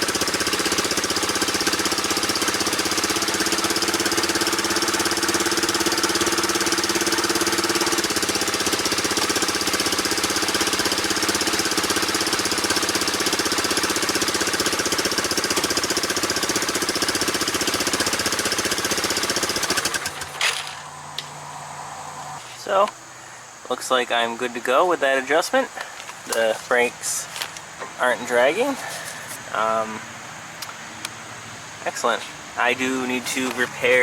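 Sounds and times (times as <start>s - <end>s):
quad bike engine running: 0.0s - 22.4s, 31.9s - 34.0s.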